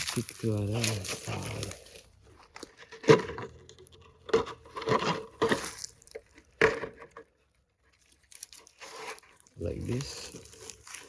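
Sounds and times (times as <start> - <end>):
wooden stick knocks and scrapes: 2.6 - 7.4.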